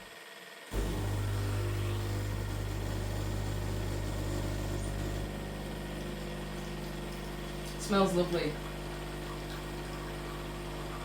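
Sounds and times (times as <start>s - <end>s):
espresso machine pump buzzing: 0.7s - 11.0s.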